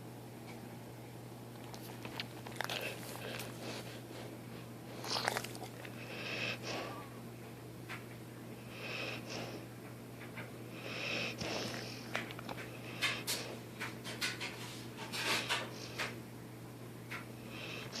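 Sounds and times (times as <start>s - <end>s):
dog snoring: 5.0s - 7.1s, 10.7s - 12.0s.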